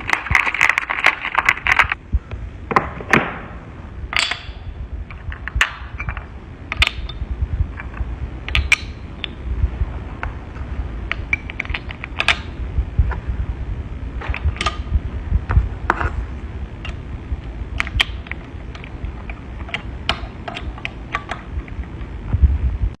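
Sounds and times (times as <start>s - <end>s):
machinery low rumble: 1.3s - 23.0s.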